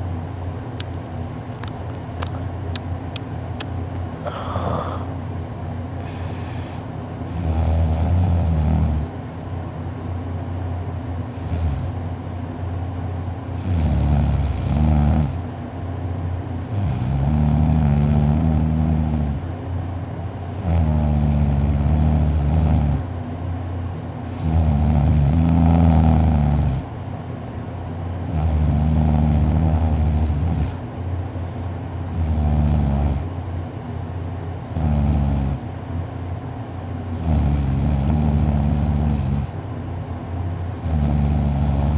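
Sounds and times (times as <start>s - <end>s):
person snoring heavily: 4.2s - 5.1s, 6.0s - 9.1s, 13.6s - 15.4s, 16.7s - 19.4s, 20.6s - 23.1s, 24.3s - 26.9s, 28.3s - 30.8s, 32.0s - 33.3s, 37.2s - 39.6s, 40.8s - 41.9s
quiet breathing: 4.2s - 5.2s, 5.9s - 8.6s.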